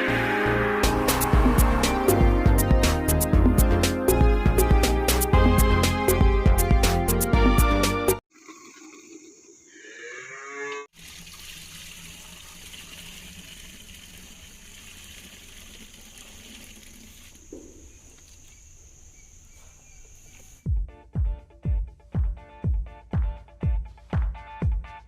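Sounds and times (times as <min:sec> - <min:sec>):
cow mooing: 0:09.7 - 0:10.9.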